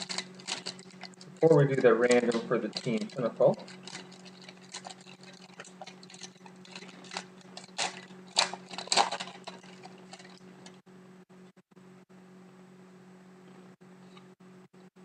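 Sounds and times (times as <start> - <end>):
card wrapper crinkling: 0.0 - 10.8
faint steady hum: 0.0 - 15.0.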